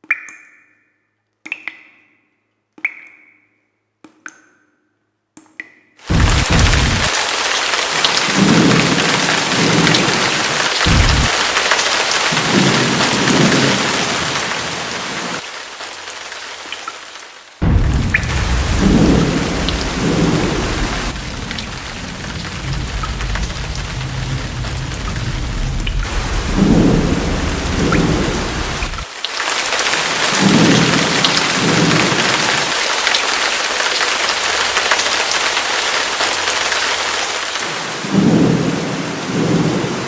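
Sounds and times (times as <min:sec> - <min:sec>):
heavy rain hissing: 0:06.0 - 0:40.0
thunder rumbling: 0:06.1 - 0:15.4, 0:17.6 - 0:29.1.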